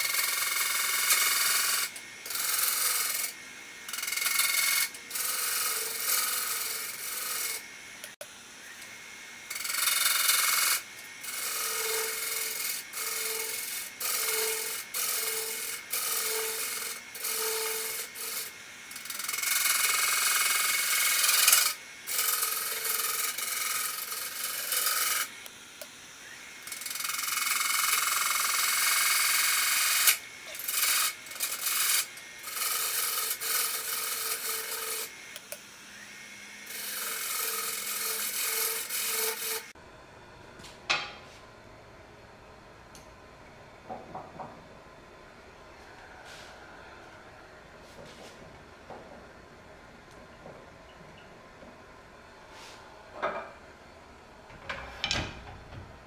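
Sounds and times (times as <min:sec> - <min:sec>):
wood scraping on lathe: 0:00.0 - 0:07.7, 0:09.5 - 0:25.4, 0:26.2 - 0:35.4, 0:36.6 - 0:39.8.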